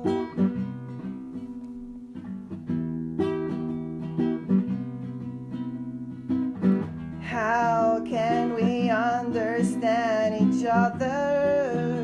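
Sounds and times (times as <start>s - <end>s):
acoustic guitar plucking: 0.0s - 12.0s.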